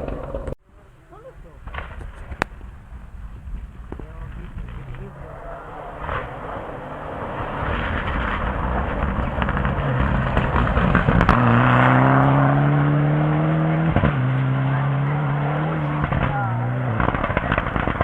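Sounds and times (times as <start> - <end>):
rally car engine accelerating: 4.0 - 18.0.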